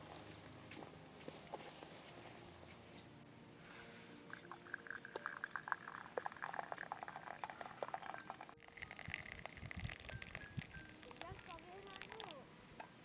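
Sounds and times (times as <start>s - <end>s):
crackling bubbling liquid: 4.4s - 12.4s.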